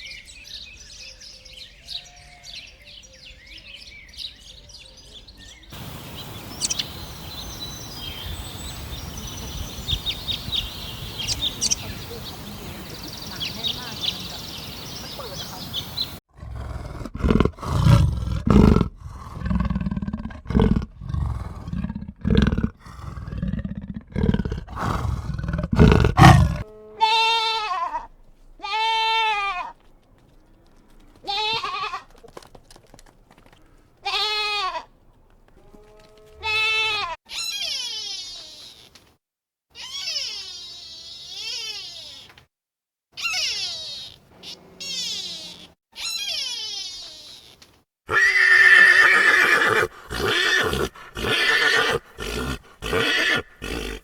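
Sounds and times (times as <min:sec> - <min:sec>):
farm animal calls: 0:04.4 - 0:16.2, 0:25.8 - 0:29.9, 0:30.6 - 0:39.0, 0:39.8 - 0:42.4, 0:43.2 - 0:54.0.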